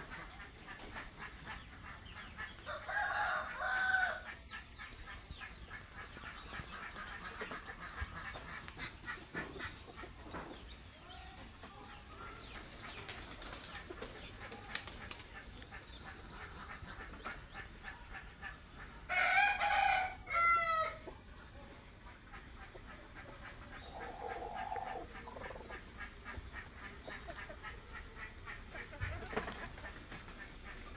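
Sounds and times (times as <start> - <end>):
chickens clucking: 0.0 - 30.9
loud chicken calls: 2.5 - 4.5, 18.4 - 21.0.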